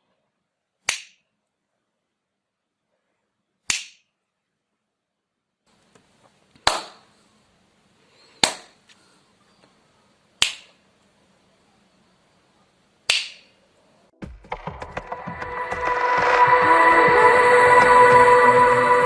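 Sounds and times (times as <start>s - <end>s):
sharp snaps: 0.8s - 1.3s, 3.6s - 4.2s, 6.6s - 7.1s, 8.4s - 8.8s, 10.4s - 10.9s, 13.0s - 13.6s
music: 14.2s - 19.0s.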